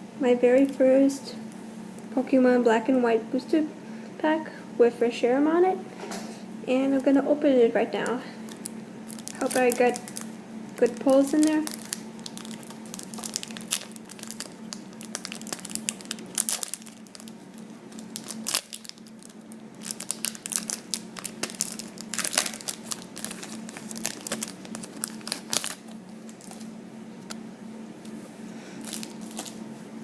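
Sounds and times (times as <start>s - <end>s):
foil wrapper crinkling and tearing: 8.4s - 26.7s, 28.8s - 29.6s.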